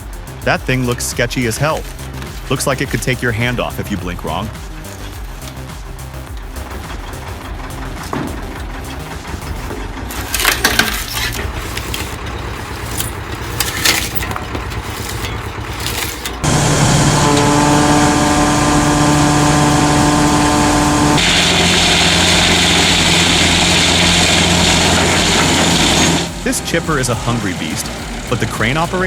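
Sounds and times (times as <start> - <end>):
engine hum: 0.0 - 29.0
machine drone with whine: 11.1 - 29.0.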